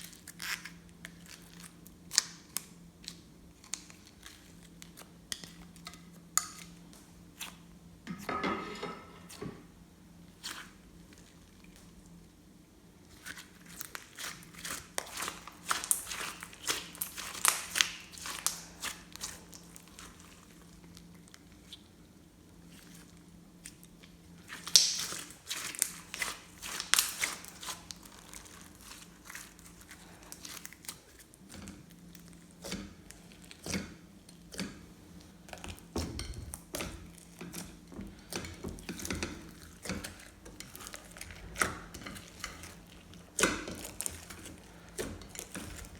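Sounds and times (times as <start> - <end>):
slime squishing by hand: 13.0 - 22.0, 22.6 - 45.9.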